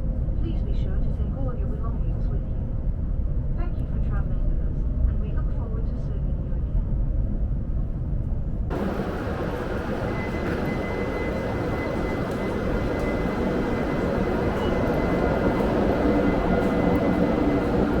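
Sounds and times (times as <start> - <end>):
train rushing rumble: 8.6 - 18.0.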